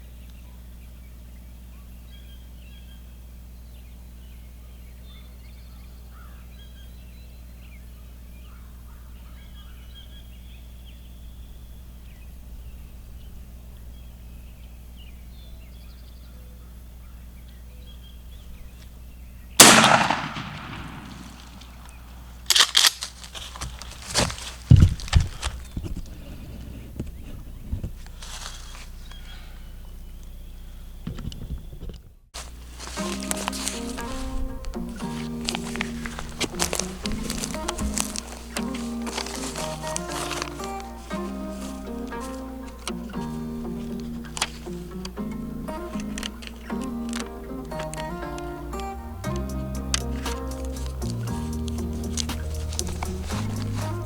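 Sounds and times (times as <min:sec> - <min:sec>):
faint bird calls: 0:00.0 - 0:22.5, 0:23.1 - 0:49.0
loud shotgun blast: 0:19.6 - 0:21.8
sharp knocks and rustling: 0:21.0 - 0:28.8, 0:31.1 - 0:47.9, 0:50.0 - 0:54.0.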